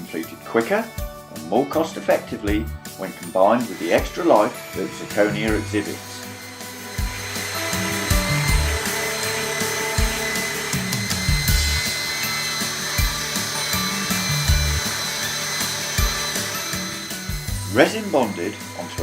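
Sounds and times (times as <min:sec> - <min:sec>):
background music with bass line: 0:00.0 - 0:19.0
belt sander on wood: 0:01.6 - 0:19.0.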